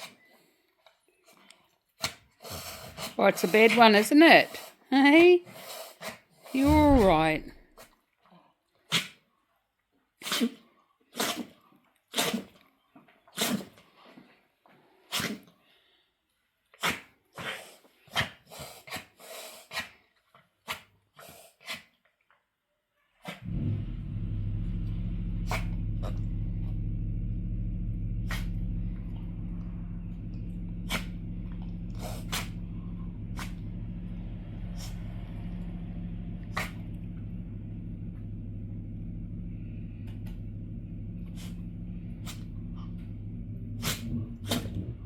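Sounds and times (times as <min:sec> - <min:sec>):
steady low hum: 0:06.6 - 0:07.6, 0:23.4 - 0:45.0
dog sneezing: 0:08.9 - 0:09.2, 0:10.2 - 0:12.5, 0:13.3 - 0:13.8, 0:15.1 - 0:15.4, 0:16.8 - 0:19.9, 0:20.7 - 0:21.9, 0:32.1 - 0:32.5.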